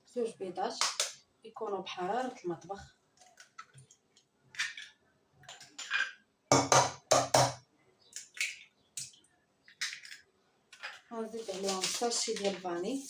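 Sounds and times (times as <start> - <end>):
eggshells cracking on bowl rim: 8.2 - 11.1.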